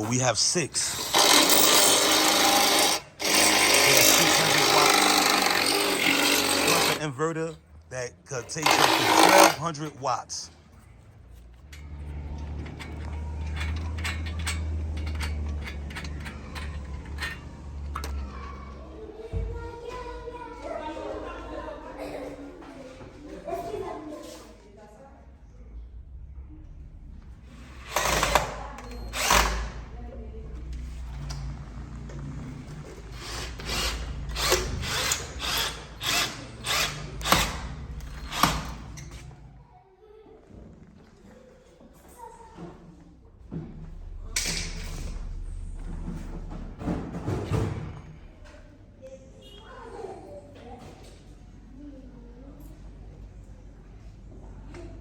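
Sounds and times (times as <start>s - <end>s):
power drill running in short bursts: 0.9s - 7.0s, 8.6s - 9.6s, 27.8s - 29.8s, 33.1s - 38.8s
low rumble: 25.4s - 27.9s, 43.2s - 48.5s
steady low hum: 25.4s - 39.6s, 43.0s - 49.0s.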